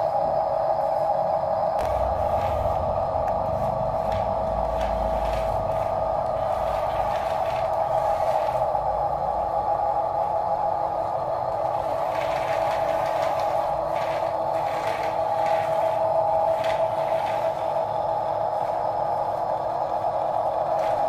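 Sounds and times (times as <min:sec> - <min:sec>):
scrapes and clatters: 0:03.5 - 0:08.7, 0:11.6 - 0:17.8
toy electric motors whining: 0:11.5 - 0:18.0, 0:20.6 - 0:21.0.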